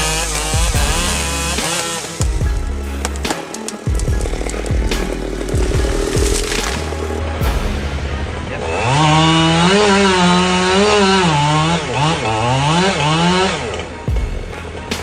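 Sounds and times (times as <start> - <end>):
chainsaw cutting: 0.0 - 15.0.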